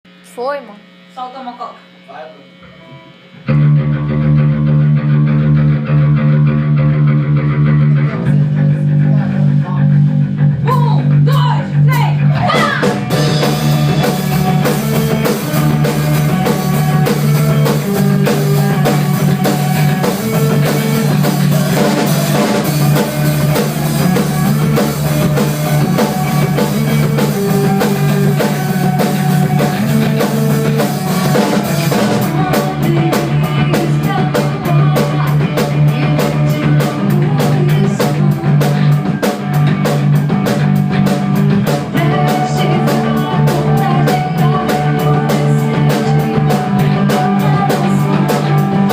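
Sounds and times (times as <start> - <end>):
rock band playing: 2.7 - 48.9.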